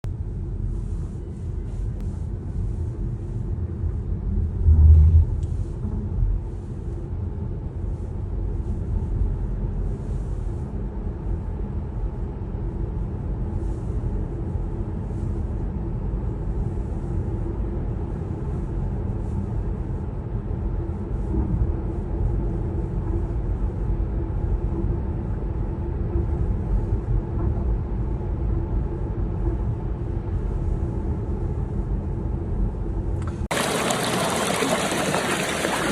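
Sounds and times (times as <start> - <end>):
steady low rumble: 0.0 - 35.9.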